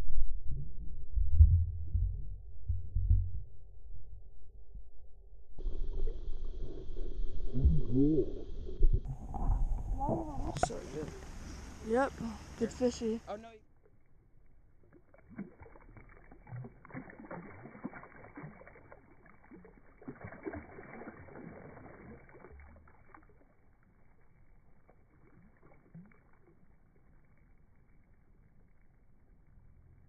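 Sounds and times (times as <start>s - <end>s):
muffled water sloshing: 5.6s - 13.2s, 13.8s - 28.0s.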